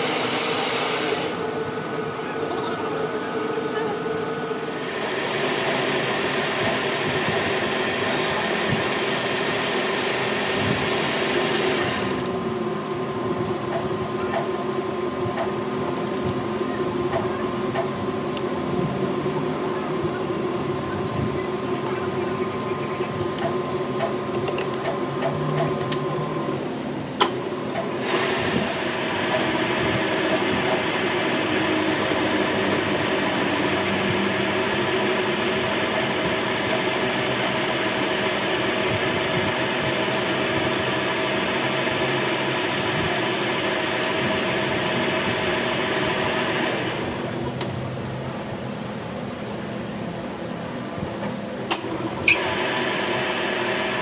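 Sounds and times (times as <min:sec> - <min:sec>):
metal lathe motor hum: 0:00.0 - 0:02.3, 0:04.5 - 0:13.2, 0:27.7 - 0:47.4.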